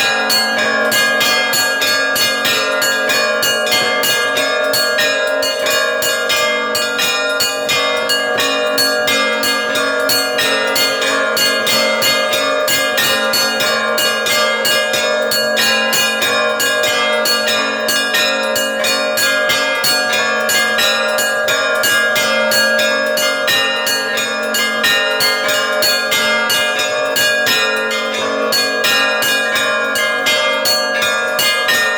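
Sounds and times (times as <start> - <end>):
church bells ringing: 0.0 - 31.9.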